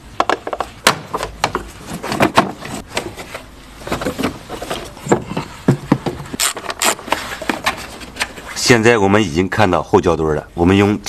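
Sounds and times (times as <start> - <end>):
car parts knocking and clunking: 0.1 - 8.2.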